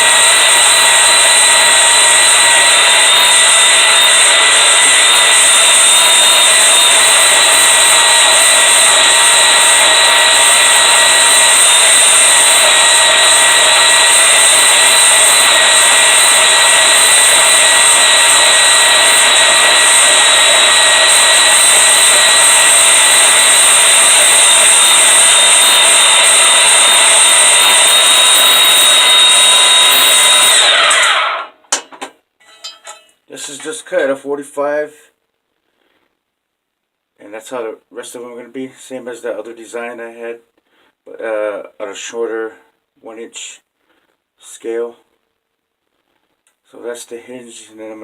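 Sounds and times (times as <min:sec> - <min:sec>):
power saw cutting steel: 0:00.0 - 0:31.6, 0:32.4 - 0:33.8.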